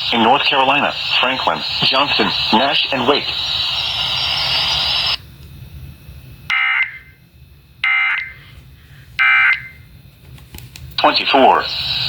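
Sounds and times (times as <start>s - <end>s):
alert data tone bursts: 6.5s - 7.1s, 7.8s - 8.4s.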